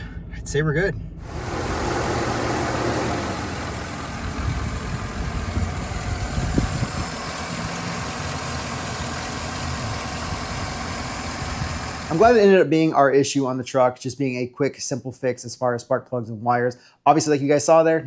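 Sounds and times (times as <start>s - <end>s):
car engine idling: 0.0s - 12.4s.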